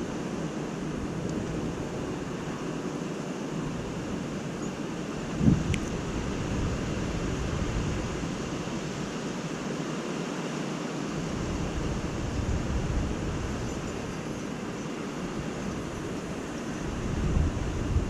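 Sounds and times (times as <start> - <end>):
strong gusting wind: 0.0 - 18.0
wind buffeting microphone: 3.6 - 9.6, 11.2 - 18.0.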